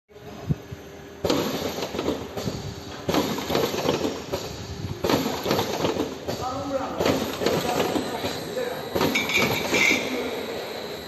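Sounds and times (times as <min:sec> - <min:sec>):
machine clattering and clicking: 0:01.2 - 0:10.1.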